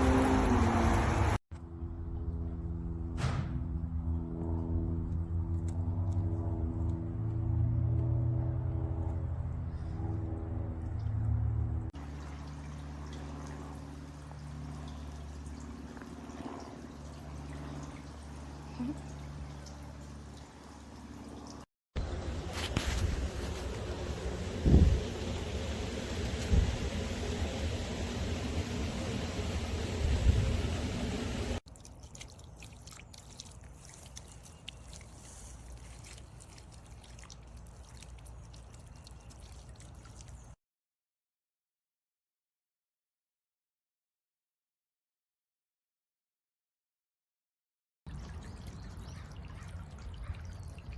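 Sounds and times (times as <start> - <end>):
water dripping and splashing: 12.0 - 21.7, 31.6 - 40.6, 48.1 - 50.9.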